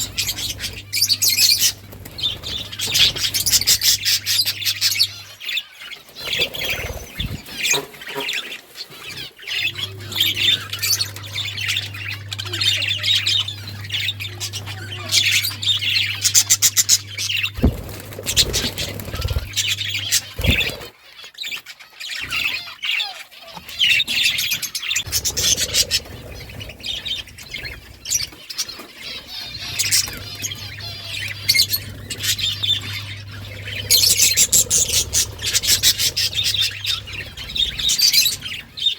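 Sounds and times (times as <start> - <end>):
budgerigars chattering: 0.0 - 38.9
low steady hum: 9.4 - 20.9, 24.9 - 38.9.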